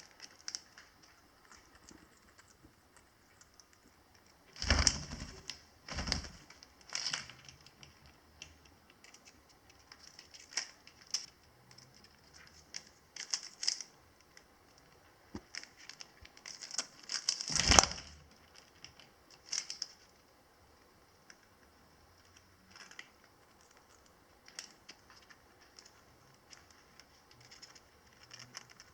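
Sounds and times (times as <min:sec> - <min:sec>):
parrot crunching a biscuit: 0:00.0 - 0:03.9, 0:06.5 - 0:20.2, 0:22.2 - 0:28.9.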